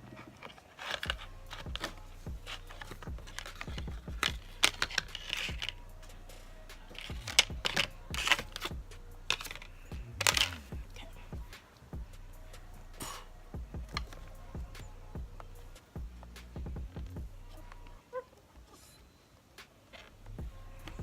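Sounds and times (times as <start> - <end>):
cases clicking and knocking: 0.0 - 5.8, 6.9 - 10.8, 13.8 - 14.8.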